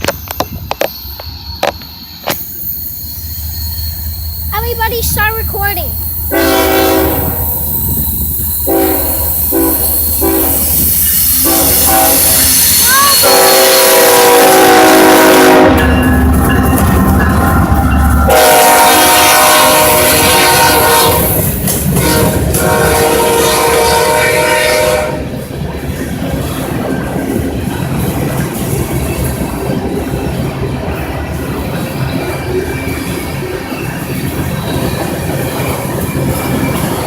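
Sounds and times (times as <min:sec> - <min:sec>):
passing train rumble: 0:00.0 - 0:37.0
locomotive air horn blasts: 0:06.3 - 0:07.6, 0:08.6 - 0:15.9, 0:18.3 - 0:25.3.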